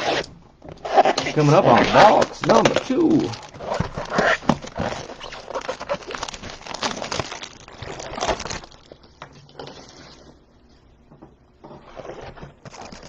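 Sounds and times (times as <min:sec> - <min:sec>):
plastic packaging crinkling and tearing: 0:00.8 - 0:10.2, 0:12.0 - 0:13.0.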